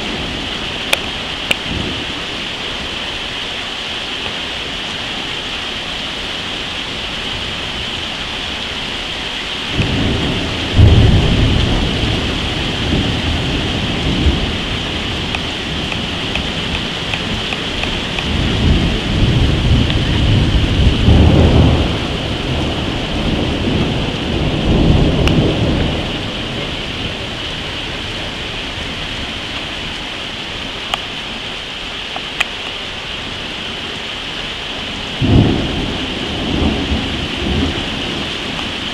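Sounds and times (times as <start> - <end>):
heavy rain hissing: 0.0 - 38.9
thunder rumbling: 9.6 - 29.5, 34.9 - 38.9.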